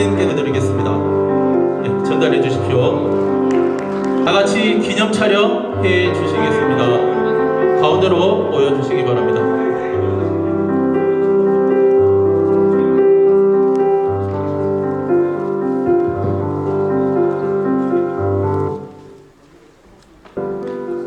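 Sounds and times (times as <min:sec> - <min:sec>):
piano-like keyboard chords: 0:00.0 - 0:21.0.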